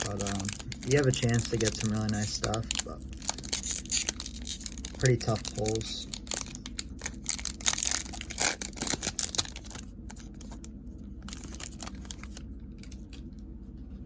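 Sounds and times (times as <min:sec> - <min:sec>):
cards clicking and rustling: 0:00.0 - 0:05.9
card pack wrapper tearing: 0:00.0 - 0:10.6, 0:11.3 - 0:13.0.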